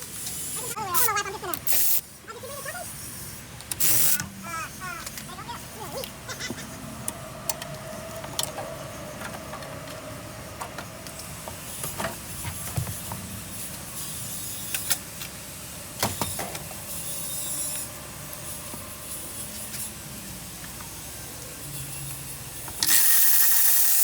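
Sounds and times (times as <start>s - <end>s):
hand tools clicking on metal: 3.6s - 4.3s.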